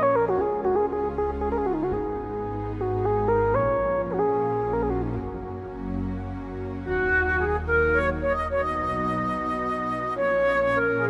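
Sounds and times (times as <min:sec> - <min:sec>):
held bass notes: 0:00.0 - 0:11.0
flute-like melody: 0:06.8 - 0:11.0.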